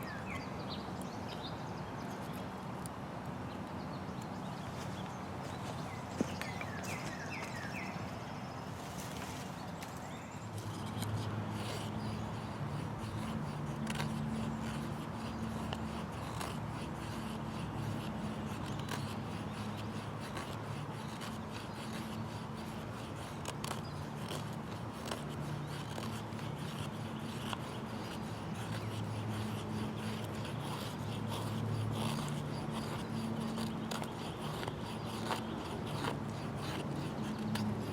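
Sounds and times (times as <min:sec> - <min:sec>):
saw blade rasping through stick: 0:10.5 - 0:37.9.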